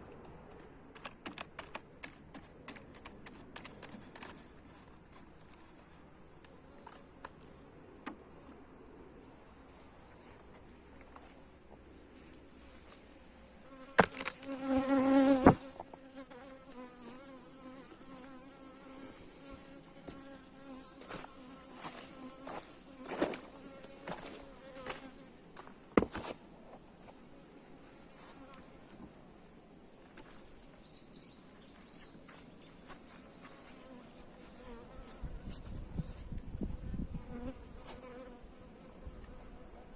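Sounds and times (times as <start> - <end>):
honeybees buzzing: 13.7 - 25.2.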